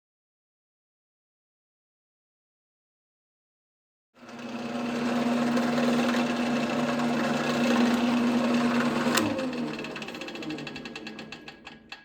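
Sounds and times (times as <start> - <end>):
wood lathe motor humming: 4.2 - 12.0
lathe switch click: 8.7 - 10.2.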